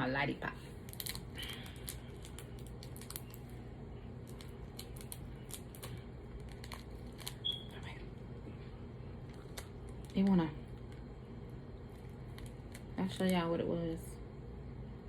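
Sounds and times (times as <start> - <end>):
plastic packet crinkling: 0.8 - 3.6, 4.2 - 7.9, 9.2 - 11.1, 11.8 - 13.4
short thin squeak: 7.4 - 7.8.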